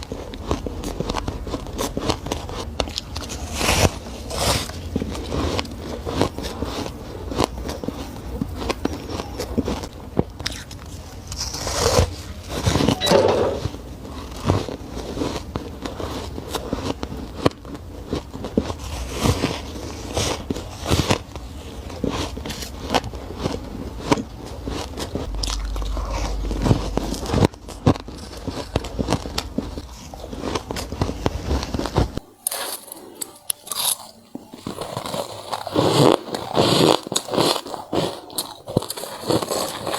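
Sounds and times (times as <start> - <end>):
ice being bitten and chewed: 0.0 - 13.1, 13.9 - 39.9.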